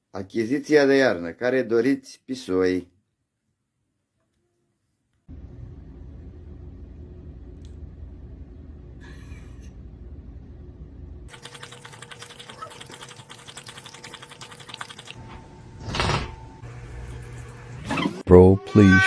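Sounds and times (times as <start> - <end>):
low hum: 5.3 - 12.7.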